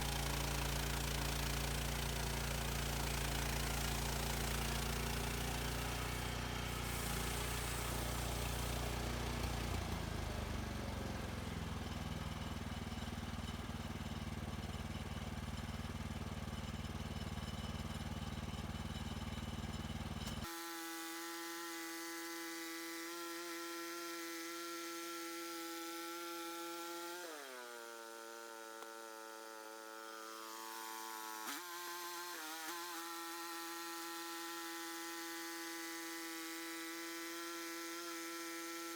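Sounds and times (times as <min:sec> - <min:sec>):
high saw whine: 0:00.0 - 0:10.0
sawmill engine and saw drone: 0:00.0 - 0:38.9.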